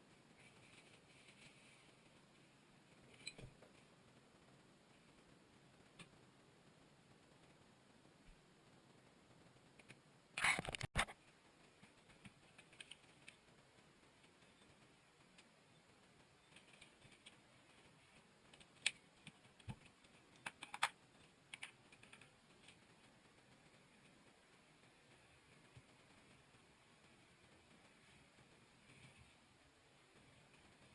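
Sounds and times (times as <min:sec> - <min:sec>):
sharp clicks and knocks: 0:09.7 - 0:28.6.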